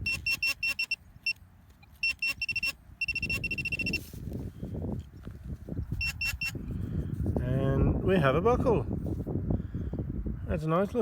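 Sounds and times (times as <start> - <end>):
metal detector pinpointer beeping: 0.0 - 4.1, 6.0 - 6.6.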